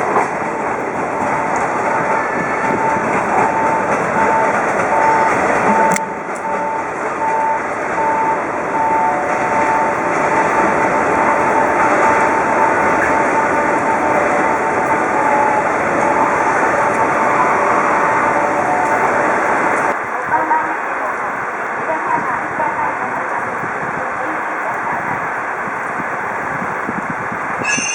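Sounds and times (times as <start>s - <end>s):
rushing rail noise: 0.0s - 27.9s
electronic beeps: 27.6s - 27.9s.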